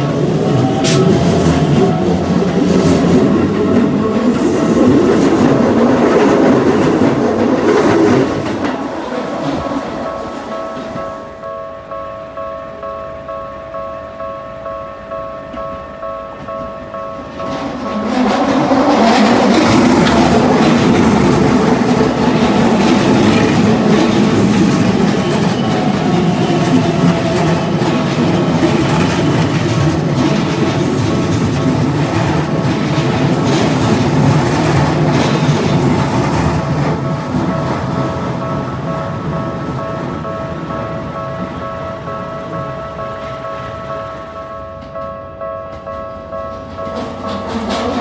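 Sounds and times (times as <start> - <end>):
wheels clacking over rail joints: 0.0 - 11.2, 16.4 - 45.1, 45.7 - 48.0
crossing warning bells: 0.0 - 48.0
electric train rumbling: 0.0 - 48.0.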